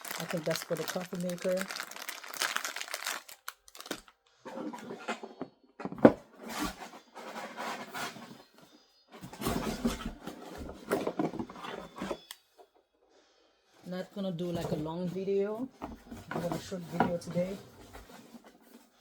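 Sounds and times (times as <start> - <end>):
paper and cardboard rustling: 0.0 - 5.2, 16.0 - 19.0.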